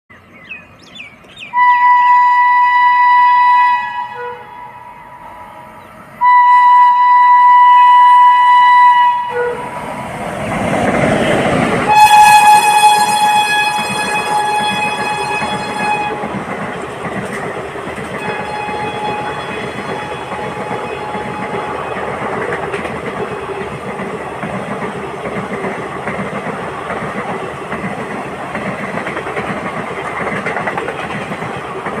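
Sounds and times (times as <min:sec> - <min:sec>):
moving train noise: 0:00.2 - 0:32.0
shrill locomotive horn: 0:01.5 - 0:09.8, 0:11.9 - 0:16.4, 0:18.2 - 0:22.1
wheels clacking over rail joints: 0:10.2 - 0:32.0.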